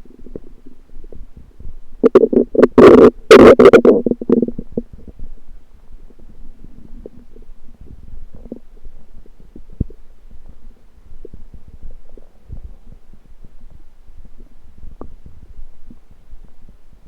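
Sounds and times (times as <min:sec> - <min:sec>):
stomach rumbling: 0:00.0 - 0:17.0
stomach pops: 0:00.1 - 0:05.3, 0:06.1 - 0:13.6, 0:14.3 - 0:16.7.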